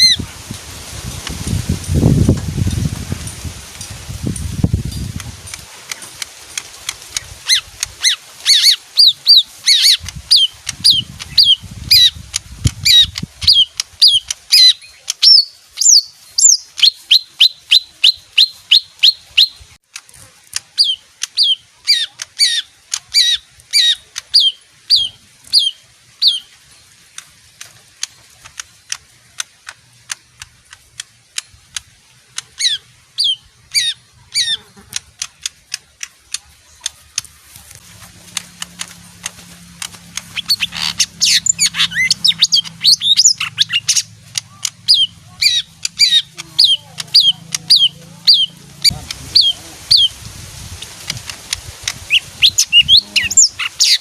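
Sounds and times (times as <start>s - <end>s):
bird calling sharp notes: 5.8s - 19.8s, 20.6s - 27.2s, 27.9s - 54.0s
low rumbling: 36.5s - 53.4s.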